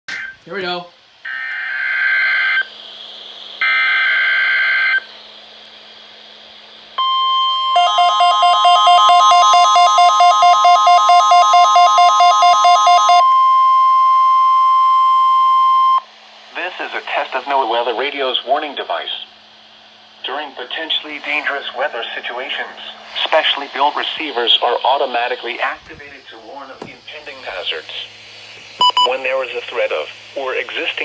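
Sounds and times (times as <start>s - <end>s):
steady warning alarm tone: 3.6s - 5.1s, 7.0s - 16.1s, 28.7s - 29.9s
raspy data tone bursts: 7.0s - 16.1s, 28.7s - 29.2s.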